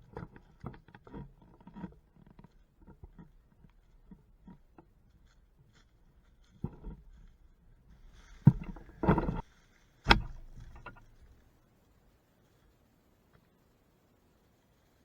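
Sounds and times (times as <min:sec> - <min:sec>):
knocks: 0:08.2 - 0:09.4, 0:10.1 - 0:11.3.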